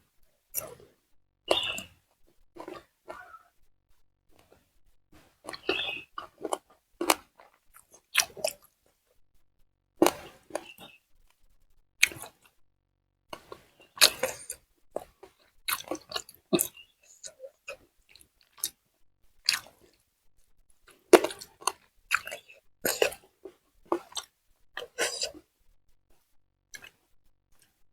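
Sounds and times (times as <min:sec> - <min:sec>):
wet chewing: 0:00.6 - 0:00.9, 0:02.6 - 0:03.4, 0:05.2 - 0:08.8, 0:10.0 - 0:11.0, 0:12.0 - 0:12.5, 0:13.3 - 0:18.8, 0:19.4 - 0:20.0, 0:20.9 - 0:25.5
crunchy bites: 0:02.6 - 0:03.4, 0:05.2 - 0:08.8, 0:10.0 - 0:11.0, 0:12.0 - 0:12.5, 0:13.3 - 0:18.8, 0:19.4 - 0:20.0, 0:20.9 - 0:25.5.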